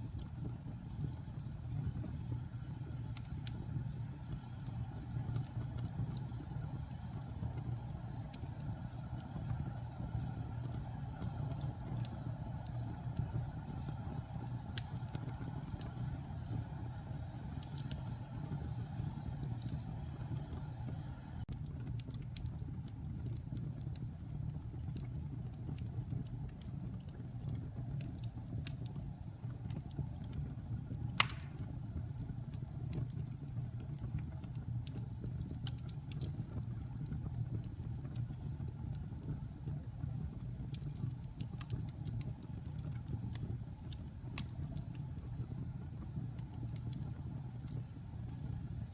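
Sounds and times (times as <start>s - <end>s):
fire crackling: 0.0s - 48.9s
wood fire rumbling: 0.0s - 48.9s
sharp loud pop: 31.2s - 31.6s.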